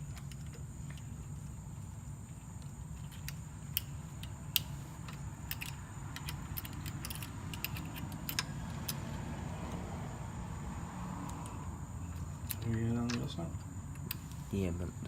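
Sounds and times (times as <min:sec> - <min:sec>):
light metallic clicks and clinks: 0:03.0 - 0:09.0.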